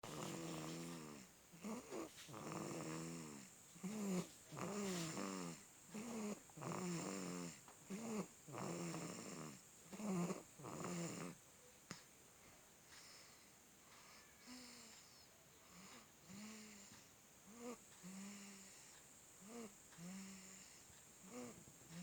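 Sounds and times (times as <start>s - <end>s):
person snoring: 0.0s - 11.4s, 19.4s - 21.6s.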